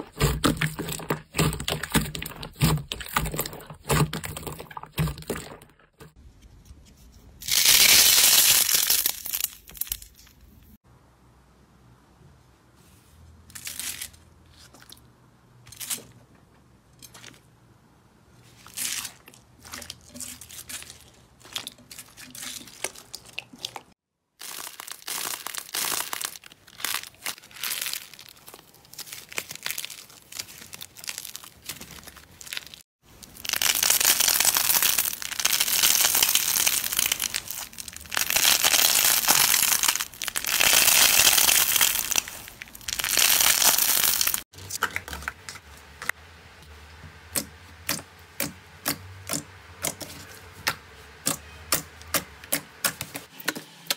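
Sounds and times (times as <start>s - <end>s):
slime squeezed by hand crackling: 24.4s - 44.4s.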